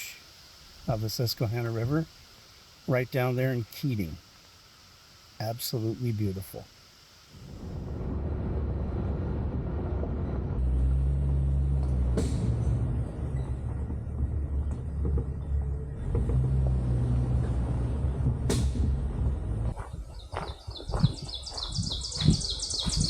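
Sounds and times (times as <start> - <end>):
engine and road rumble: 7.2 - 23.0.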